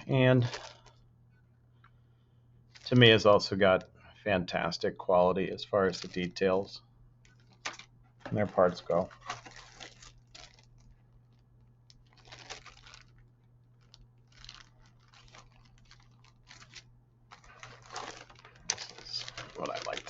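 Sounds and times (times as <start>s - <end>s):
plastic packaging crinkling: 0.0s - 1.0s, 2.7s - 3.8s, 5.8s - 20.0s.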